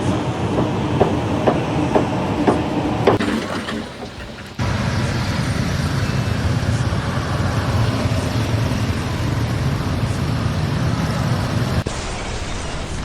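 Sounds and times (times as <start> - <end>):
loud rumble with hiss: 0.0 - 13.0.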